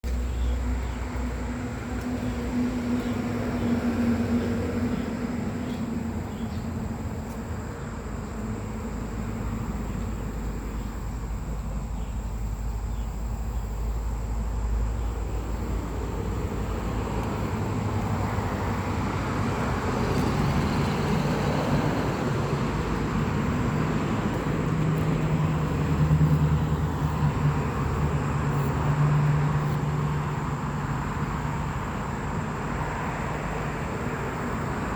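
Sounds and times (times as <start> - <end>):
vehicle engine rumbling: 0.0 - 34.9.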